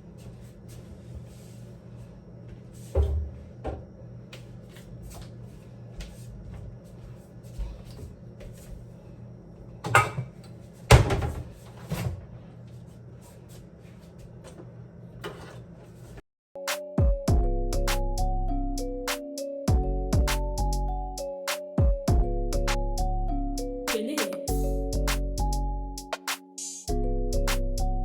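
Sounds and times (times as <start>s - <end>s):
low appliance hum: 0.0s - 16.2s.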